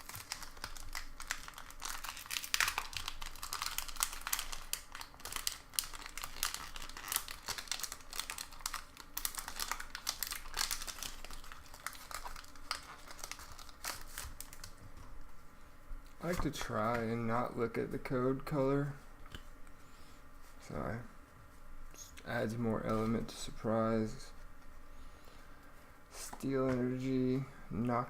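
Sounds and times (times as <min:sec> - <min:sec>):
foil wrapper crinkling: 0:00.0 - 0:14.8.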